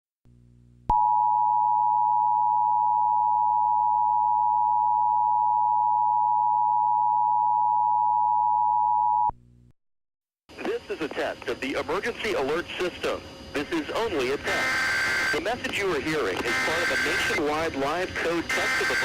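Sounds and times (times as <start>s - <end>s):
two-tone alarm signal: 14.5s - 15.4s, 16.4s - 17.4s, 18.5s - 19.0s.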